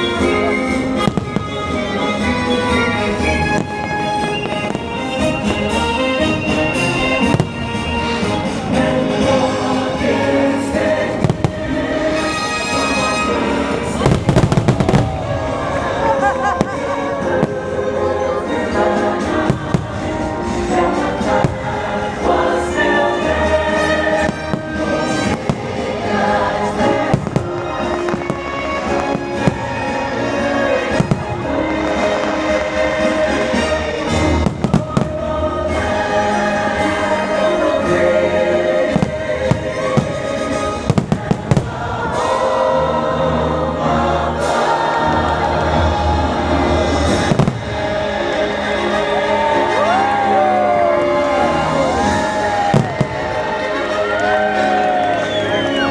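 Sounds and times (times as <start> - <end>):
fireworks bangs and crackles: 0.0 - 17.9, 18.7 - 36.0, 38.9 - 42.6, 44.4 - 49.1, 49.7 - 55.9
choir singing: 0.0 - 55.9
music over speakers: 15.7 - 55.9.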